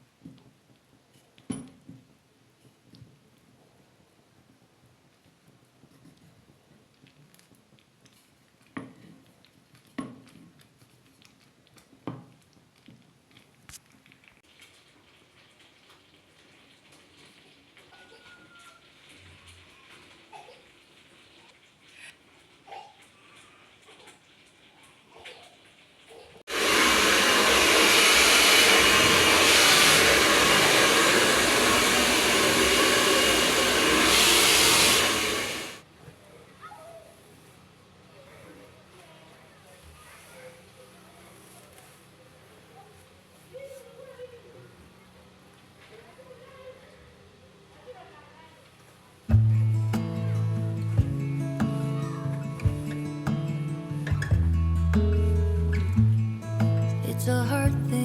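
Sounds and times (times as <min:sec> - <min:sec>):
electric appliance running: 0:26.5 - 0:35.8.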